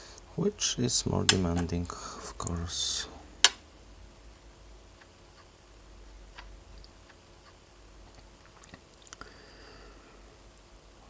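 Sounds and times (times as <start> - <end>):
sharp handling click: 1.2 - 1.8.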